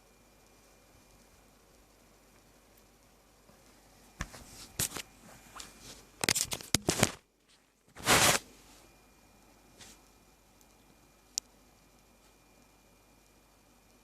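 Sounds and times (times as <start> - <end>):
long rustling scrape: 7.9 - 8.9
short scrapes: 8.0 - 8.5.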